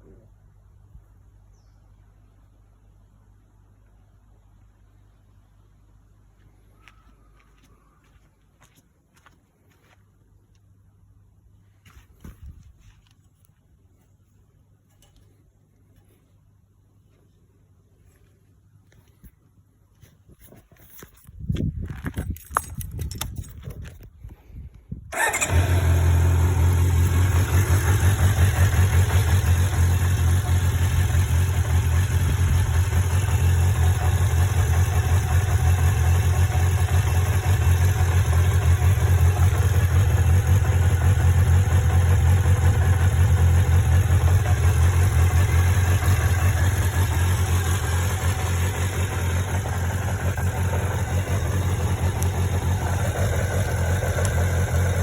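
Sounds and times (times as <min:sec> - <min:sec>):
motorcycle engine starting and idling: 0:25.1 - 0:55.0.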